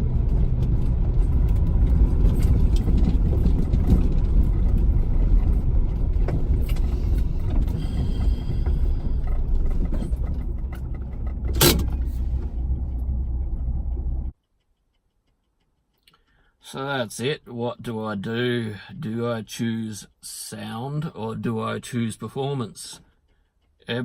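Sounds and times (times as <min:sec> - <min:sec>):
car engine running: 0:00.0 - 0:14.3
sharp thump: 0:11.4 - 0:12.4.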